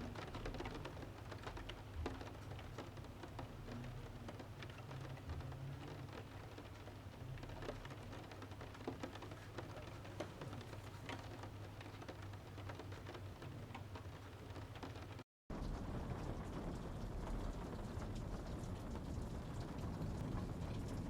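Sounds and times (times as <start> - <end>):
low rain rumble: 0.0 - 21.0
raindrops pattering: 0.0 - 21.0.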